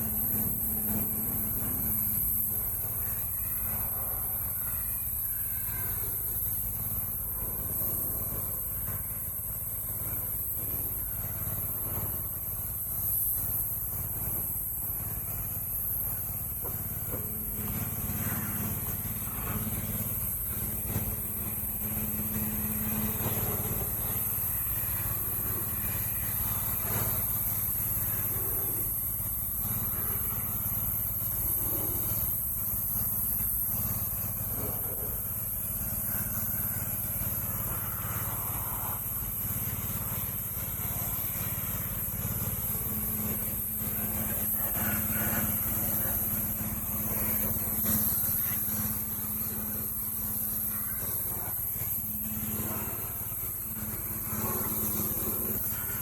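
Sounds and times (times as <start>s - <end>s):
pressure washer motor hum: 0.0s - 56.0s
water jet hissing: 42.8s - 56.0s.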